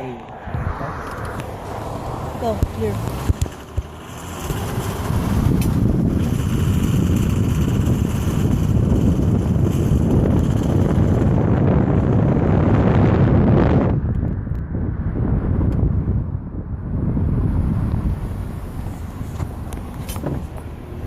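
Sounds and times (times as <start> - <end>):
car running and road noise: 0.0 - 21.0
wind rushing over microphone: 0.0 - 21.0
microphone handling knocks: 19.3 - 20.6.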